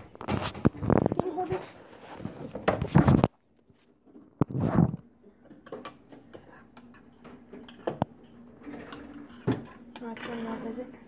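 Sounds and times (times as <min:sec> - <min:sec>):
utensils and dishes clinking: 0:05.4 - 0:10.8.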